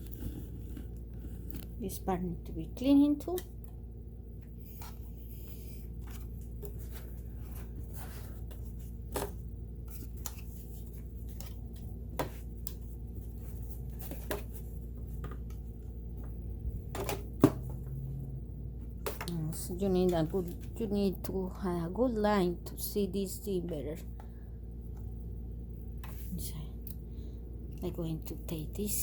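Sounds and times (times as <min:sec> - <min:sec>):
rubbing and handling noises: 0:00.0 - 0:03.6, 0:04.4 - 0:18.0
steady low hum: 0:00.0 - 0:29.0.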